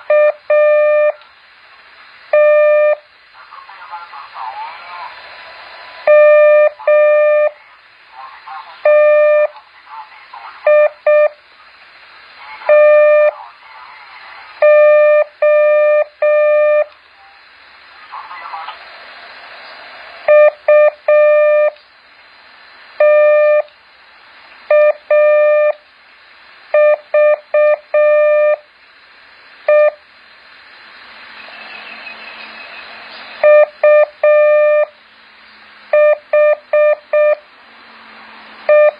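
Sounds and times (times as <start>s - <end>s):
faint hiss: 0.0s - 38.8s
morse code beeping tone: 2.4s - 3.0s, 6.1s - 7.6s, 8.8s - 9.5s, 20.3s - 21.8s, 23.0s - 23.7s, 24.7s - 25.8s, 26.8s - 28.6s, 29.7s - 30.0s, 33.4s - 34.9s, 36.0s - 37.4s.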